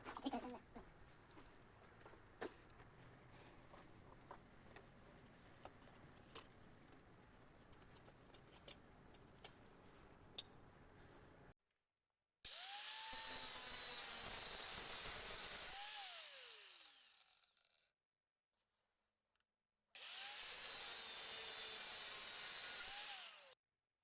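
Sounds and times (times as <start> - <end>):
power tool whining: 12.5 - 17.7, 20.0 - 23.6.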